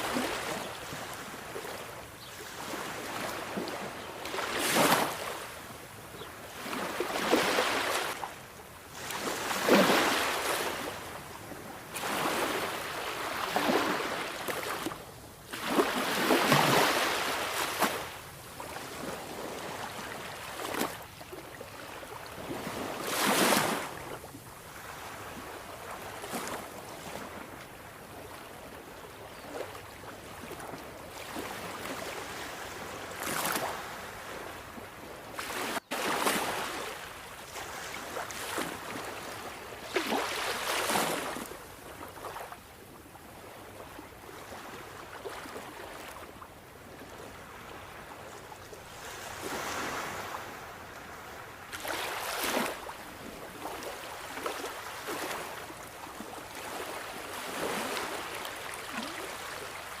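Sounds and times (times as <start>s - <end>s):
sea waves breaking: 6.6s - 8.2s, 9.0s - 10.9s, 12.0s - 21.0s, 35.4s - 42.5s, 49.0s - 60.0s.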